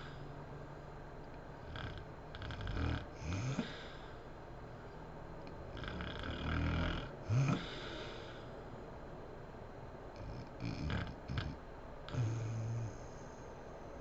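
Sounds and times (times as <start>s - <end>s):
woman snoring: 1.6s - 4.0s, 5.8s - 8.4s, 10.2s - 13.2s.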